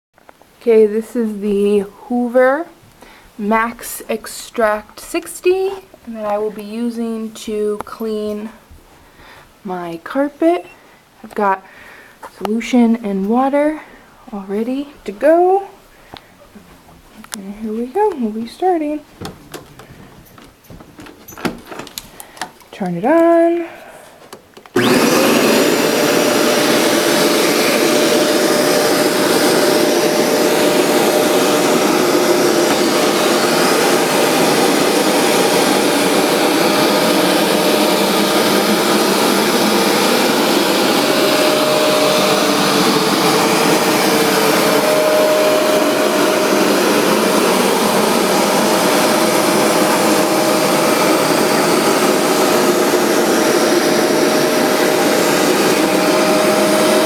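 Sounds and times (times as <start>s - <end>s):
carpet cleaner suction motor: 24.8s - 57.0s.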